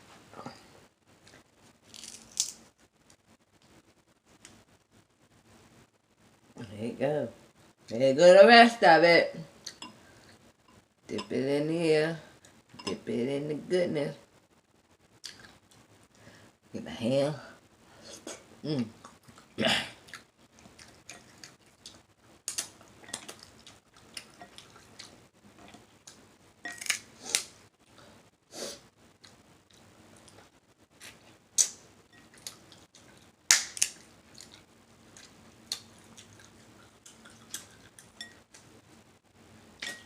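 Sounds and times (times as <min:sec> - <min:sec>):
wet mouth smacking and chewing: 0:32.3 - 0:38.6.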